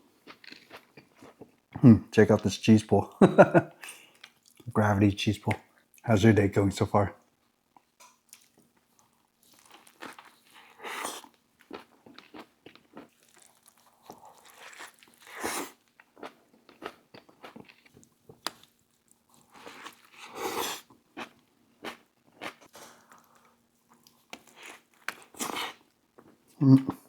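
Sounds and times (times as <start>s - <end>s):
person chewing and biting: 0.2s - 1.5s, 9.5s - 23.4s.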